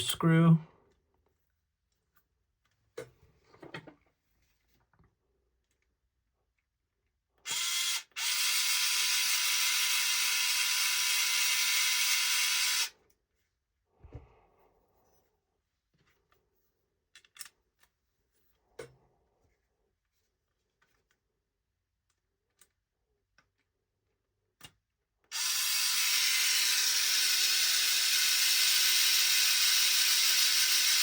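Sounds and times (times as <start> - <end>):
cordless drill driving screw: 7.5 - 12.9, 25.3 - 31.0
small parts clicking and tapping: 17.1 - 18.0, 22.0 - 25.0.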